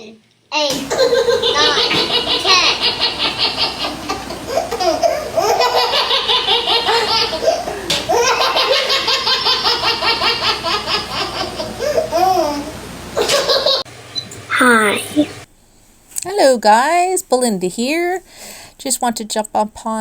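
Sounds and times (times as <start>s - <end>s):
young child giggling: 0.8s - 13.8s.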